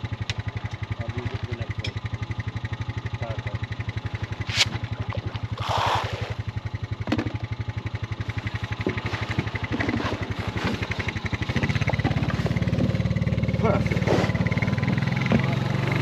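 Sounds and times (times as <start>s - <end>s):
small engine puttering: 0.0s - 16.0s.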